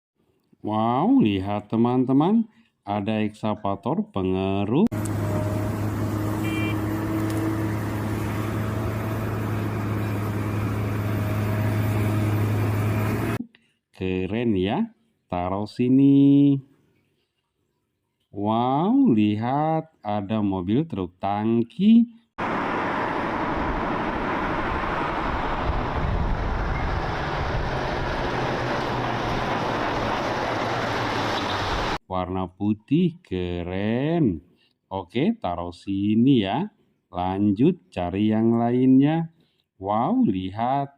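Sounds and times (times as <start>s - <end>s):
engine drone: 4.9s - 13.4s, 22.4s - 32.0s.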